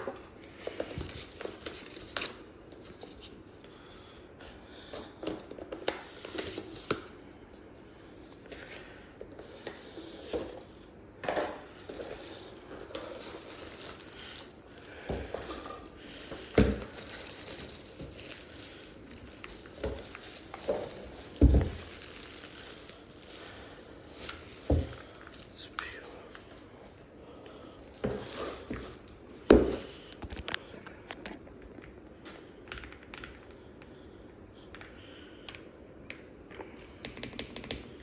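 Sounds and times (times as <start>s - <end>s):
packaging rustling and crinkling: 8.2s - 31.4s.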